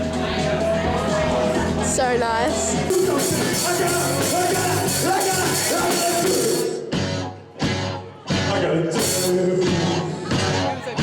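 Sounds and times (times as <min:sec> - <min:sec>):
person singing: 0:00.0 - 0:06.8
live rock band playing: 0:00.0 - 0:10.8.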